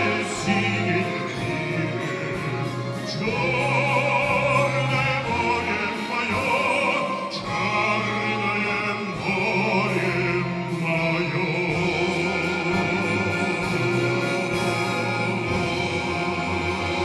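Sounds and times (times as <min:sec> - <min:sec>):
folk orchestra playing: 0:00.0 - 0:17.0
man singing operatically: 0:00.0 - 0:17.0.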